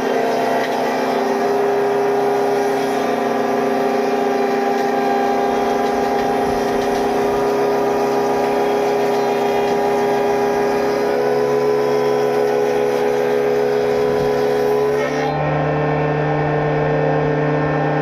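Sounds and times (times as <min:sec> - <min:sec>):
woodworking machinery motor hum: 0:00.0 - 0:18.0.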